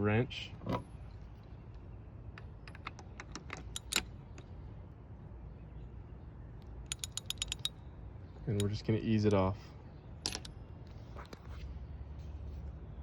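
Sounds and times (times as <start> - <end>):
socket wrench metal clicks: 2.4 - 4.5, 6.9 - 7.8
ratchet clicks: 2.7 - 4.1, 6.9 - 7.8.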